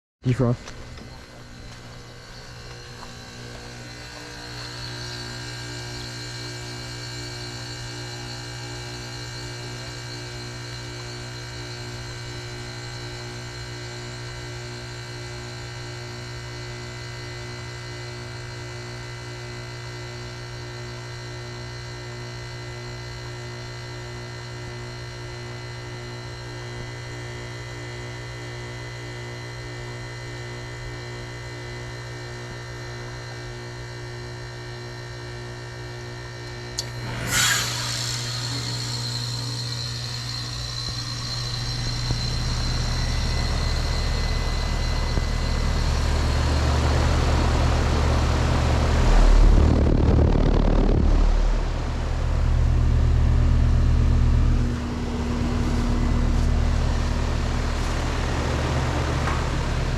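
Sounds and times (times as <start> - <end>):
heat pump unit humming: 0.2 - 59.9.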